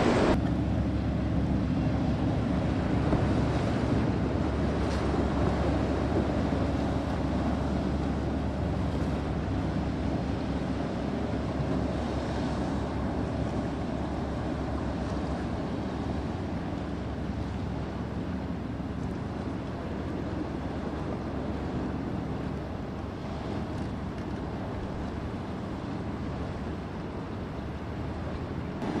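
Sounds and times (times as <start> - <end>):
wind on microphone: 0.0 - 0.4, 17.8 - 29.0
boat engines running: 0.0 - 29.0
surf rushing: 0.0 - 29.0.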